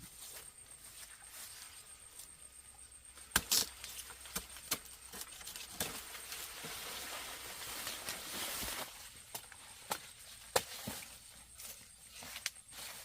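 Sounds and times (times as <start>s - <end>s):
sugarcane stalks snapping: 3.2s - 6.8s, 7.8s - 11.0s, 12.2s - 12.6s
dry leaves rustling: 3.6s - 13.0s.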